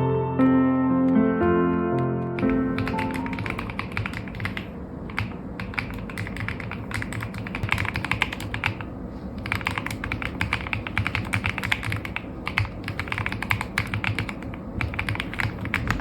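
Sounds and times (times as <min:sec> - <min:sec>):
piano music: 0:00.0 - 0:04.2
fast keyboard typing: 0:02.0 - 0:16.0.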